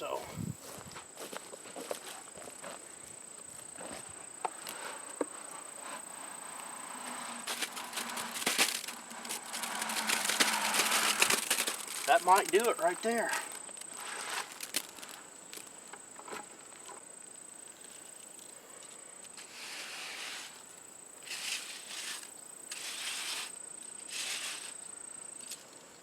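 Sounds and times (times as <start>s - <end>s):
insect droning: 0.0s - 26.0s.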